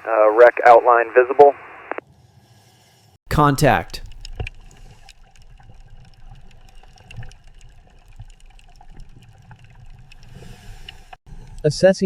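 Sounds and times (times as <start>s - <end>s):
small clicks and ticks: 4.0s - 11.7s.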